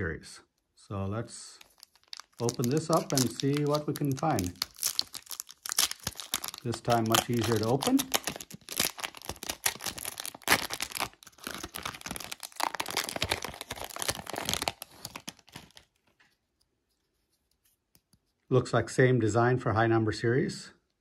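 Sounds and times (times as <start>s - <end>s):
foil wrapper tearing and crinkling: 1.6s - 15.9s.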